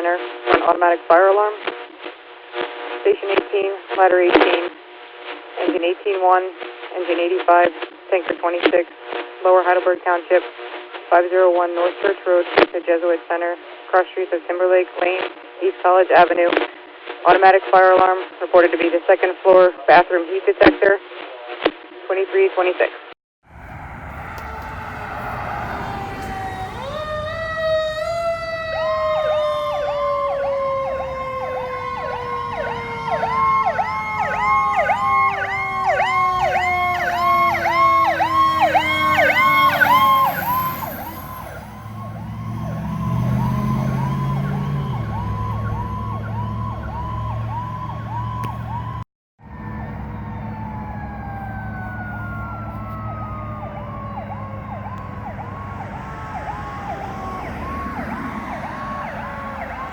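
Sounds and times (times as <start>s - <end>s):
deeper steady siren tone: 23.5s - 59.9s
siren winding down in pitch: 23.5s - 59.9s
siren yelping rapidly: 23.7s - 59.9s.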